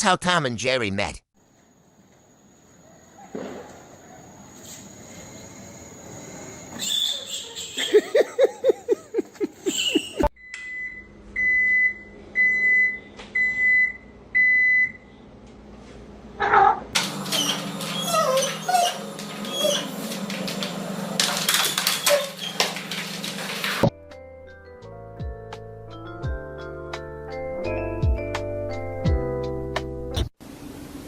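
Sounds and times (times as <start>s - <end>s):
short falling animal cries: 16.4s - 16.9s
jumble of clatter: 17.0s - 23.9s.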